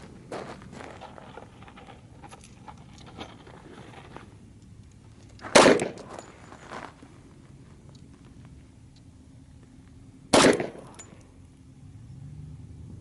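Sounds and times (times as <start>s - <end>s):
pistol shot: 5.5s - 6.1s, 10.3s - 11.0s.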